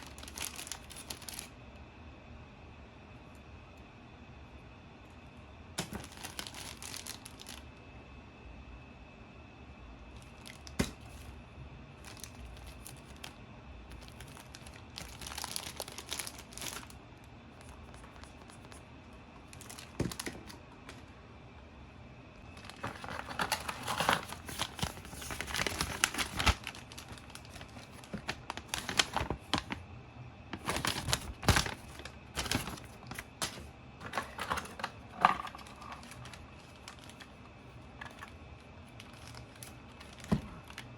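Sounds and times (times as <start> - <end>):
packaging crinkling and tearing: 0.0 - 1.5, 5.8 - 7.7, 10.2 - 11.3, 12.0 - 18.8, 19.4 - 21.0, 22.4 - 29.8, 30.5 - 40.9.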